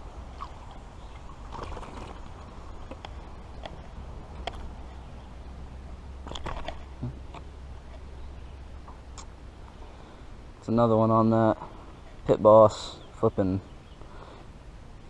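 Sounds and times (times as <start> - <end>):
steady low rumble: 0.0 - 15.0
fishing tackle clicks and knocks: 2.8 - 4.9, 6.2 - 8.0.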